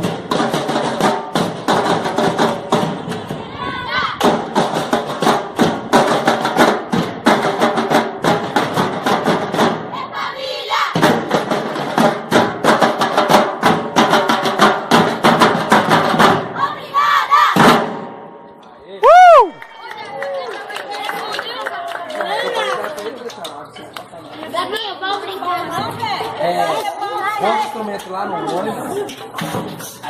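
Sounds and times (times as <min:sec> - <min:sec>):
drums playing fast beat: 0:00.0 - 0:03.4, 0:04.1 - 0:09.9, 0:10.9 - 0:16.6.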